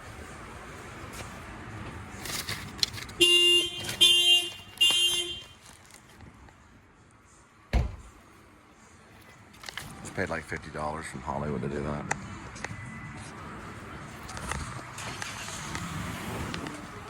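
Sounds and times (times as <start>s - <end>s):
vehicle noise: 0.0s - 17.0s
car horn blasts: 3.2s - 5.6s
thump: 7.7s - 8.1s.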